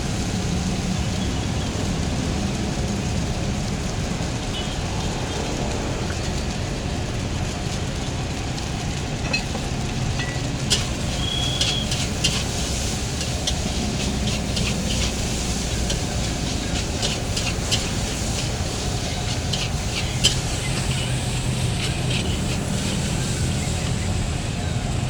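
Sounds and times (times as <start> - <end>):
rice sizzling: 0.0 - 25.0
metal spatula scraping a wok: 10.6 - 23.7.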